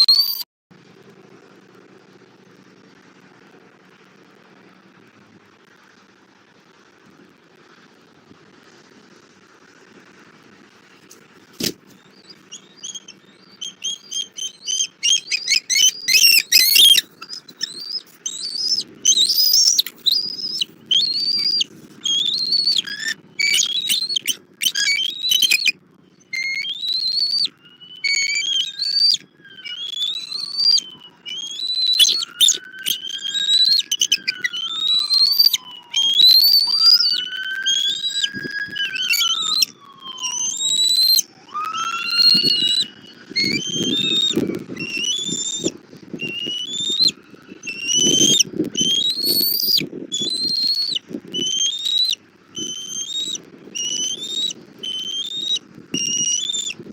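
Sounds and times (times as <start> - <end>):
eagles calling: 11.6 - 56.8.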